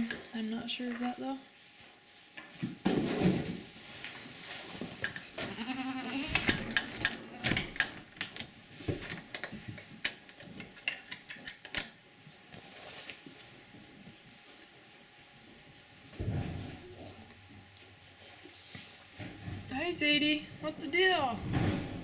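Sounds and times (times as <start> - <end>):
goat bleating: 5.4 - 7.7.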